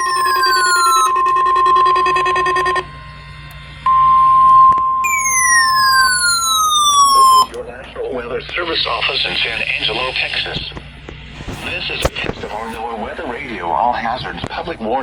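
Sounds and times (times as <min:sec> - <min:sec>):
falling electronic sweep: 0:00.0 - 0:03.1, 0:05.0 - 0:07.5
high alarm tone: 0:00.0 - 0:07.6
steady electronic tones: 0:00.0 - 0:07.7.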